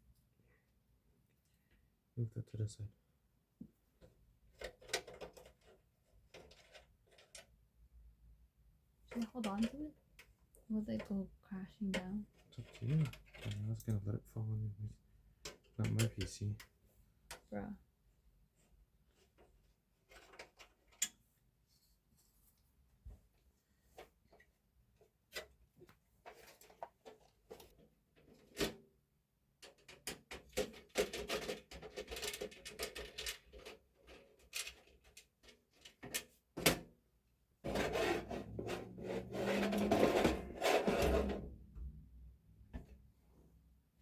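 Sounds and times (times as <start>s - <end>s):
scraping and rubbing: 37.6s - 41.5s.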